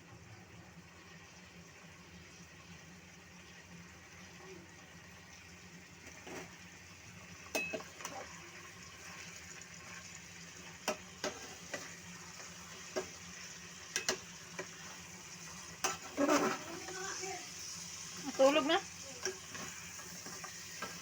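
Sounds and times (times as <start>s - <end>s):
chicken sizzling in a pan: 0.0s - 21.0s
utensil scraping a pan: 10.9s - 13.2s, 13.9s - 17.4s, 18.2s - 21.0s.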